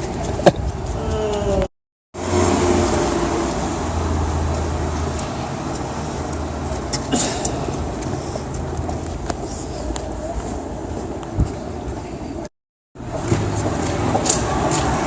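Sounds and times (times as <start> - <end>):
engine rumble: 0.0 - 15.0
road hiss: 2.2 - 10.3.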